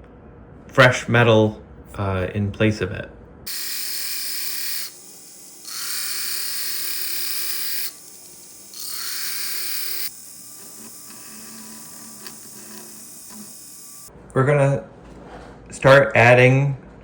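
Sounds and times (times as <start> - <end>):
rotary tool grinding metal: 3.5 - 14.1.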